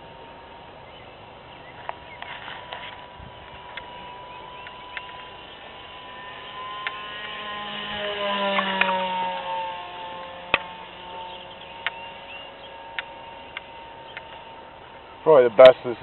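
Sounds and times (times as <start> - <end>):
model plane motor whining: 0.0 - 16.0
sharp clicks: 4.6 - 5.2, 12.9 - 14.4.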